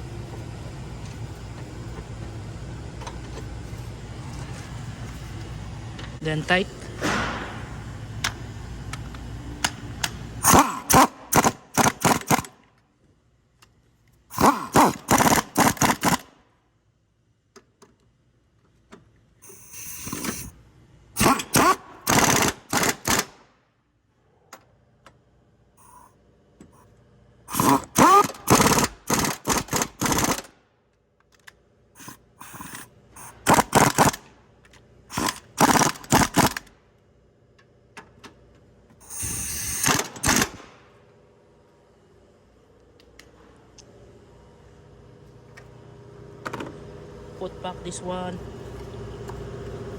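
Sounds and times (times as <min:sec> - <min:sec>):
ratchet wrench clicking: 0:19.4 - 0:20.5, 0:21.2 - 0:23.2, 0:27.5 - 0:30.5, 0:32.0 - 0:34.2, 0:35.1 - 0:36.6, 0:39.0 - 0:40.6.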